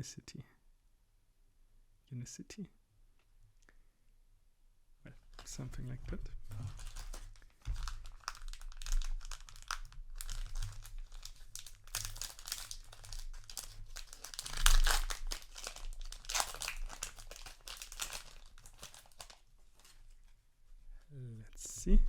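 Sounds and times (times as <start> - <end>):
wrapper crinkling and tearing: 5.2 - 5.7, 6.4 - 20.4.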